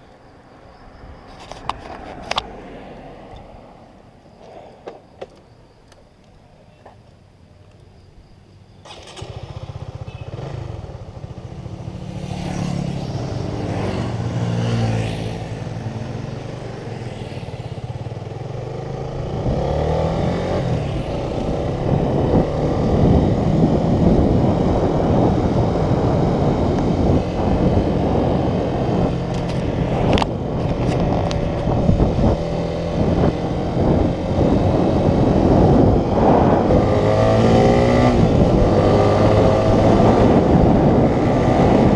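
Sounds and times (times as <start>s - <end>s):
motorcycle engine revving: 8.8s - 41.9s.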